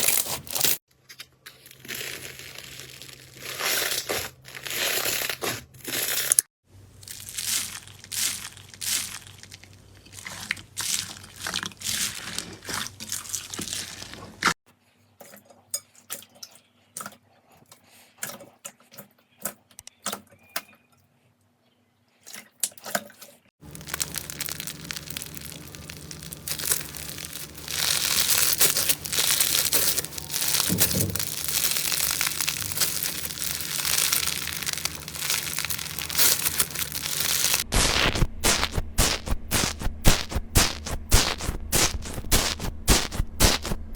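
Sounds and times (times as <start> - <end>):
slime crackling: 7.0 - 14.6, 23.6 - 43.9.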